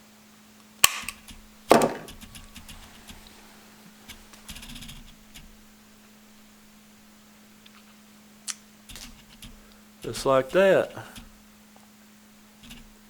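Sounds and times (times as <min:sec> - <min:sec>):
small metal clicks: 0:00.8 - 0:03.3, 0:04.1 - 0:05.6, 0:07.6 - 0:11.9, 0:12.5 - 0:13.0
steady low hum: 0:01.1 - 0:13.0
knock on workbench: 0:01.7 - 0:02.2
light metal rattle: 0:08.6 - 0:13.0.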